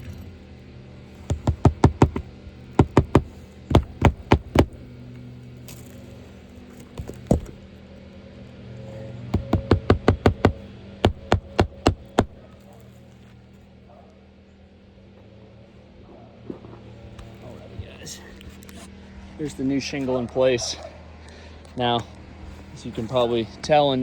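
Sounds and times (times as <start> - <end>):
hammer striking roofing nails: 1.2 - 5.0, 7.0 - 7.6, 9.4 - 12.5.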